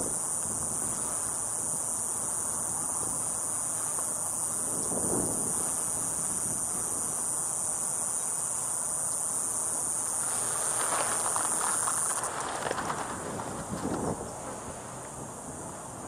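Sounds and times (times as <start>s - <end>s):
high-pitched insect buzzing: 0.0s - 12.3s
rustling and scuffing: 10.2s - 14.6s.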